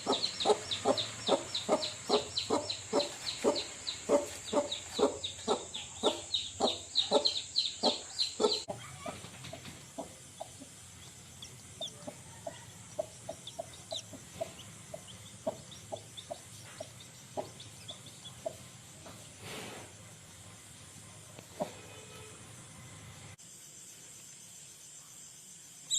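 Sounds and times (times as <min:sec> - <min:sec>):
hen clucking: 0:00.0 - 0:19.2
brief hiss: 0:19.3 - 0:20.1.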